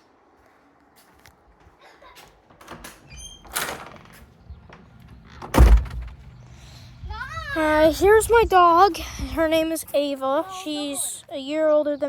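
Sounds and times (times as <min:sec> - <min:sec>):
door clicks: 0:02.2 - 0:06.4
door squeak: 0:02.5 - 0:06.3
door scraping: 0:02.5 - 0:06.6
door thumping shut: 0:02.6 - 0:06.3.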